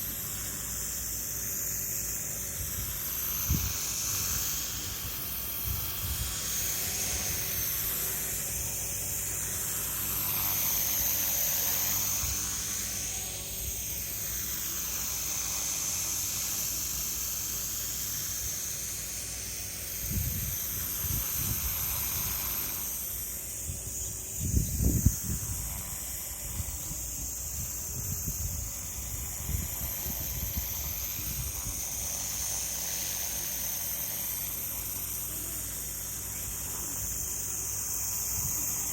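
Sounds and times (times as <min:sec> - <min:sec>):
rc helicopter motor whine: 0:00.0 - 0:38.9
wind buffeting microphone: 0:23.6 - 0:32.0.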